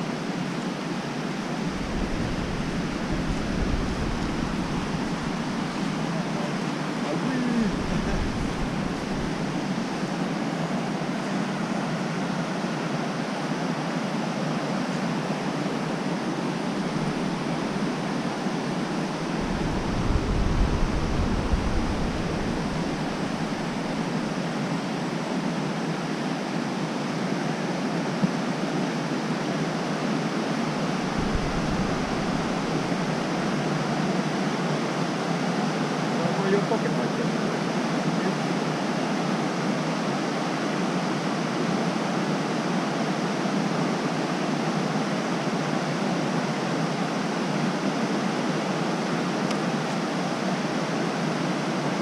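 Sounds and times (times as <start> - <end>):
waterfall rushing: 1.3 - 10.2, 16.6 - 24.7, 30.9 - 34.2
deep low rumble: 1.7 - 6.1, 7.7 - 9.9, 18.8 - 24.4, 31.1 - 33.5.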